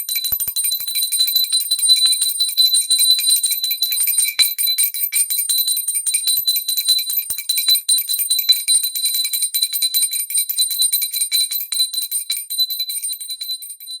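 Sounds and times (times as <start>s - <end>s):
hand bell ringing: 0.0s - 8.4s, 11.3s - 14.0s.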